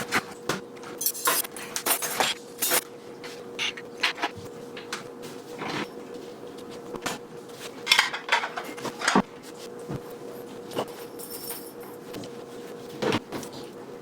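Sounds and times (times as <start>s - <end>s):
faint steady hum: 0.0s - 14.0s
dishes and cutlery clinking: 7.8s - 9.2s.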